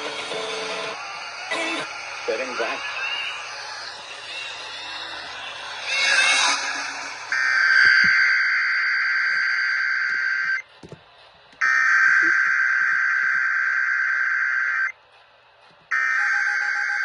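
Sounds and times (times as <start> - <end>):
digital data bursts: 0.4 - 9.6.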